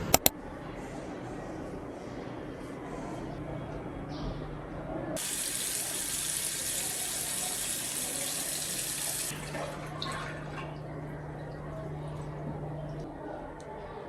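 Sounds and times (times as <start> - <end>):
tap water running into sink: 5.2 - 10.8.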